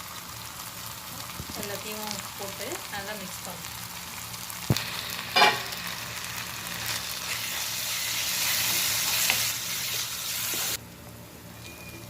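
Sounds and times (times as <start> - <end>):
food sizzling in oil: 0.0 - 10.8.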